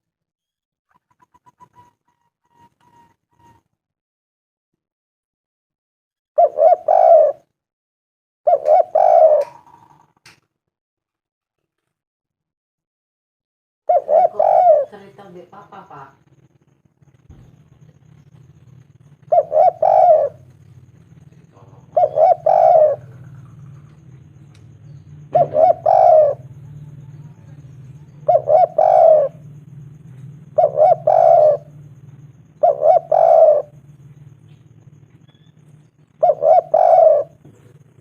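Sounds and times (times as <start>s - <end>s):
dove cooing: 0.9s - 3.6s, 6.4s - 7.5s, 8.5s - 10.2s, 13.9s - 16.1s, 17.3s - 38.0s
steady low hum: 13.9s - 38.0s.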